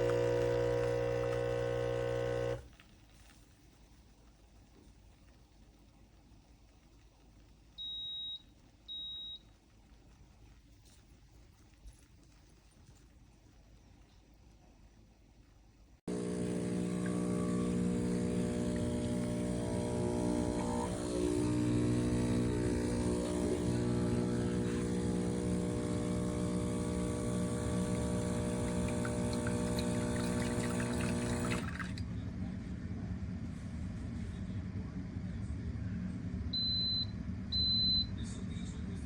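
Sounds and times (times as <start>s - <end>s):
espresso machine pump buzzing: 0.0s - 2.7s, 16.1s - 31.9s
water rushing: 28.8s - 32.0s.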